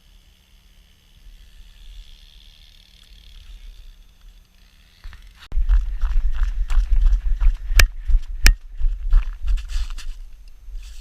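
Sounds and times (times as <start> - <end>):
handling clicks and scrapes: 9.4 - 11.0.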